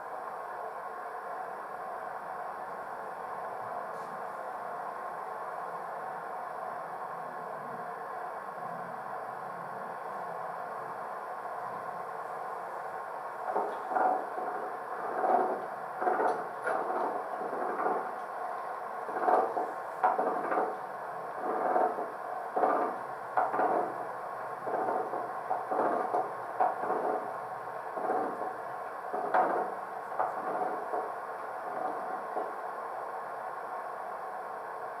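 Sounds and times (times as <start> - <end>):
train hum: 0.0 - 35.0
train knocks and clunks: 13.4 - 32.8.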